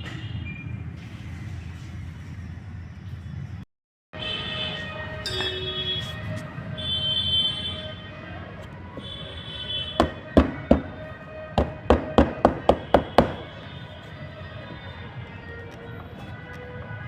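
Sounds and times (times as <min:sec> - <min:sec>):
sharp knocks: 0:10.0 - 0:11.0, 0:11.6 - 0:13.5.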